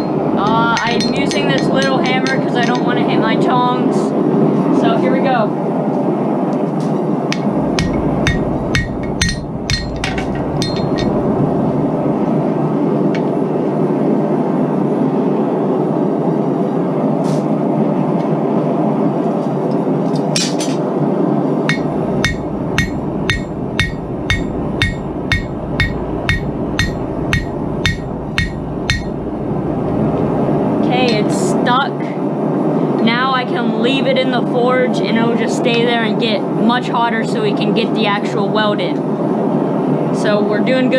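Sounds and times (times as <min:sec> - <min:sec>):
hammer striking hot metal: 0:00.0 - 0:03.0, 0:07.3 - 0:11.4, 0:21.7 - 0:29.3.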